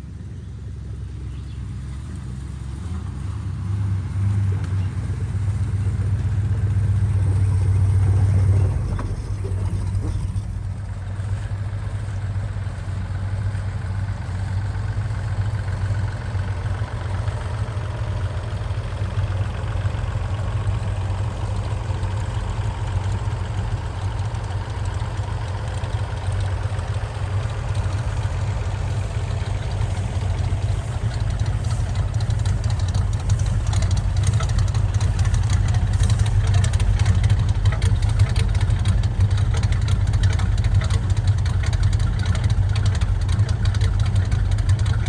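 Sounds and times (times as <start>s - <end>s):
pickup engine running: 0.0s - 45.0s
clicking and crackling: 25.8s - 45.0s.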